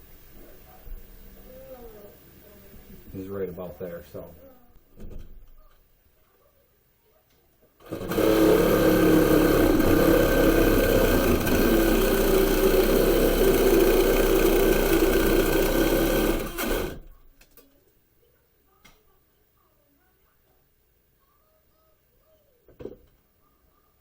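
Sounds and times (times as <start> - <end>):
electric saw cutting sheetrock: 7.8 - 17.1.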